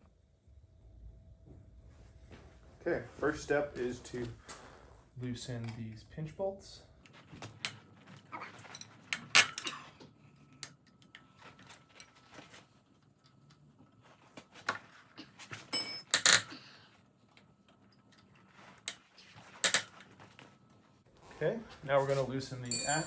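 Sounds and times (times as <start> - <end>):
ringing metal clink: 15.7 - 16.3, 22.6 - 23.0
metal tools clanking on bolts: 22.6 - 23.0.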